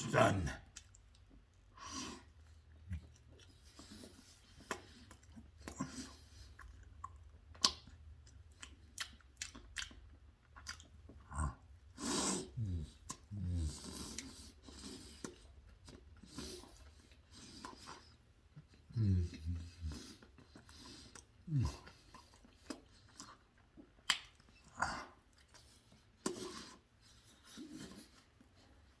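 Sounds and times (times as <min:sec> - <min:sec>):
man chewing food: 0:00.1 - 0:29.0.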